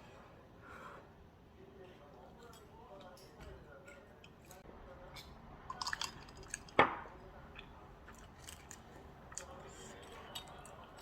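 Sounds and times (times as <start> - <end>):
crackling clicks of eating: 7.6 - 11.0.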